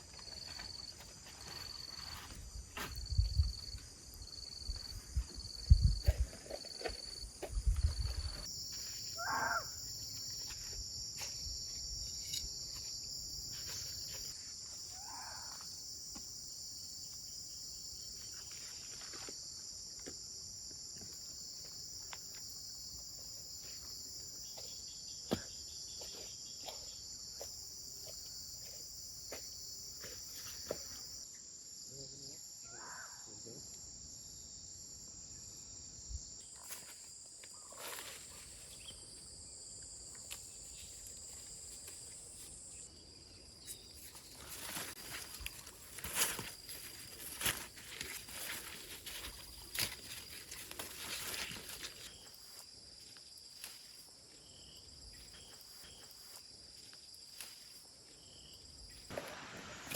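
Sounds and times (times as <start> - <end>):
insects trilling: 0.0 - 59.9
short animal calls: 9.2 - 9.7.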